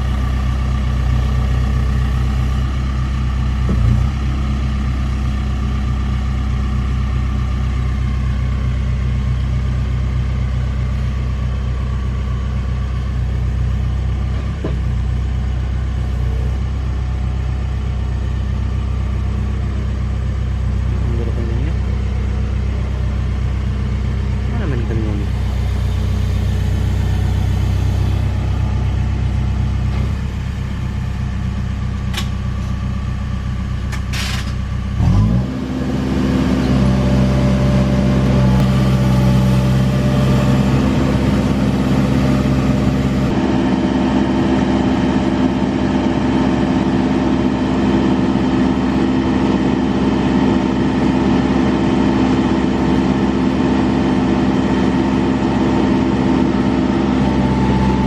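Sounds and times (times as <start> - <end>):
diesel engine revving: 0.0 - 8.6, 20.0 - 33.2, 33.9 - 58.0.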